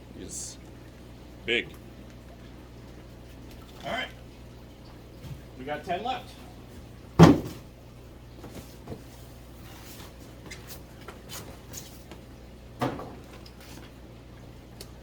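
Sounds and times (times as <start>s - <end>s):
box thump: 7.2s - 7.6s.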